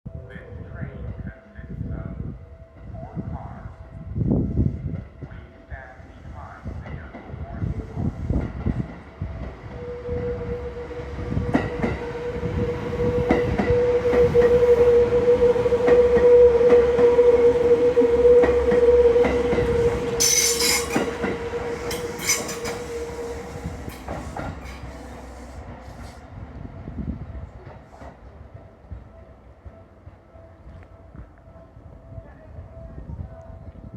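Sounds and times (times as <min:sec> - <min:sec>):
steady train whine: 0:00.1 - 0:33.9
train wheels clicking over rail joints: 0:19.3 - 0:26.2.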